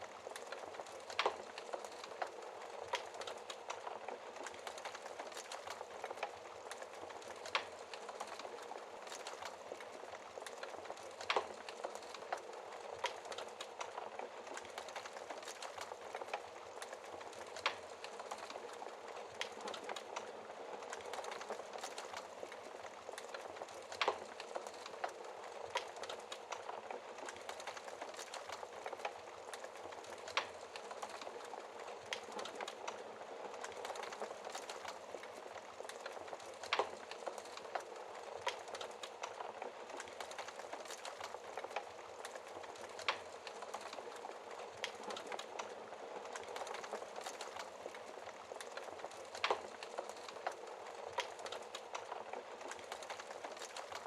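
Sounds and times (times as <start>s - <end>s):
fire popping: 0.0s - 54.0s
wood fire crackling: 0.0s - 54.0s.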